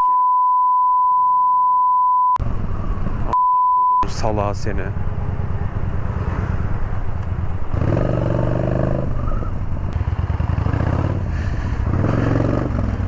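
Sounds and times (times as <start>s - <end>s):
motorcycle engine running: 4.8s - 13.0s.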